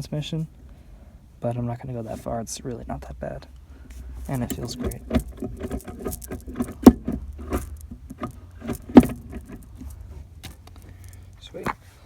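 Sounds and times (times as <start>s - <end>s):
gear shifter clicking and knocking: 4.2s - 11.8s
gear shifter clunks: 4.2s - 11.8s.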